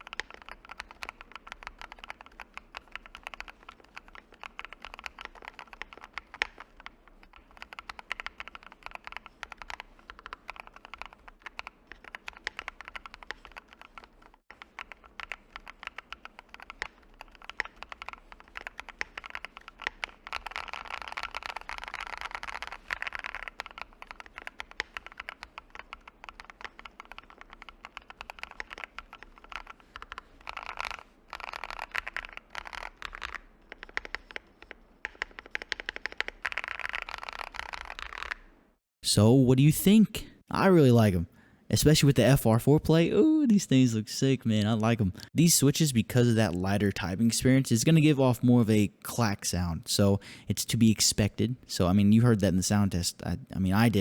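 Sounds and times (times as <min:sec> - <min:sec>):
mechanical keyboard typing: 0:00.0 - 0:38.5.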